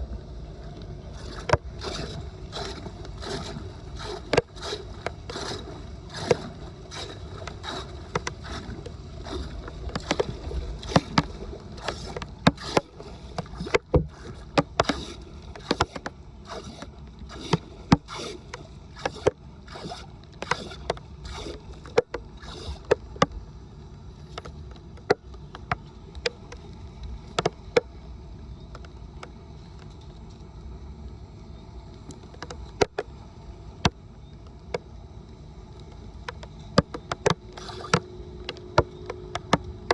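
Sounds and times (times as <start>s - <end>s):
floodwater sloshing and running: 0.4s - 23.3s, 36.3s - 39.9s.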